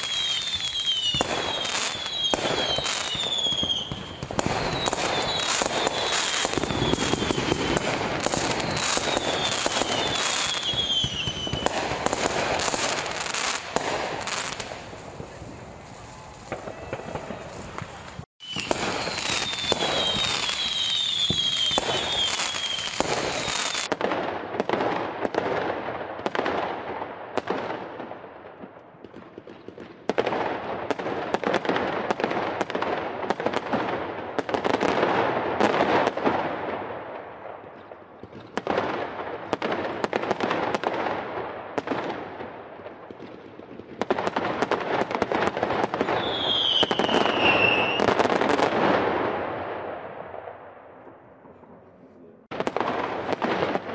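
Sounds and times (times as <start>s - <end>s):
falling firework whistles: 0.0s - 23.9s, 45.9s - 48.7s
fireworks bangs and crackles: 0.0s - 53.9s.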